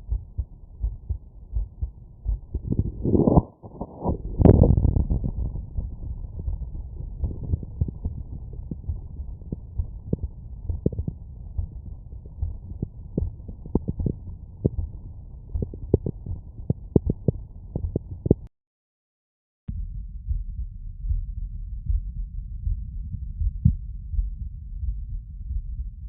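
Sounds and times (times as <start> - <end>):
heartbeats through stethoscope: 0.0 - 18.5, 19.7 - 26.0
low rumble: 0.0 - 18.5, 19.7 - 26.0.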